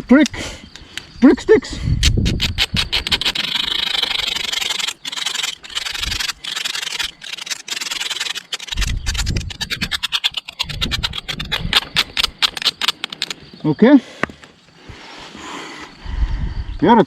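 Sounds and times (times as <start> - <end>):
knife blade scraping brick: 2.1 - 13.4.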